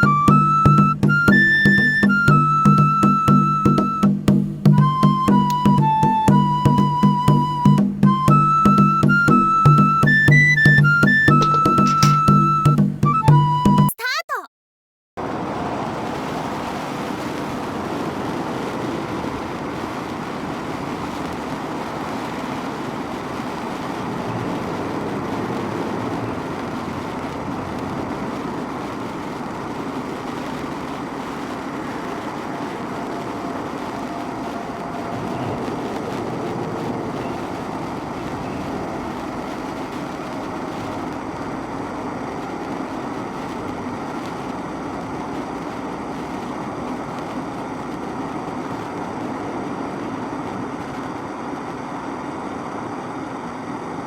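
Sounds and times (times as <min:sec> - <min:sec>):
sparkler fizzing crackle: 0:04.8 - 0:12.6, 0:15.2 - 0:54.0.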